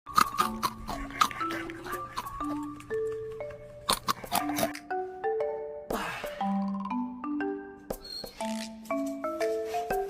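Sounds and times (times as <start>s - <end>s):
mallet-like melody: 4.5s - 10.0s.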